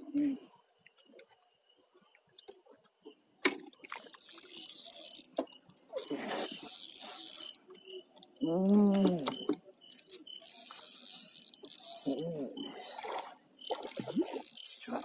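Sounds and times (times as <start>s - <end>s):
person humming: 8.4s - 9.4s.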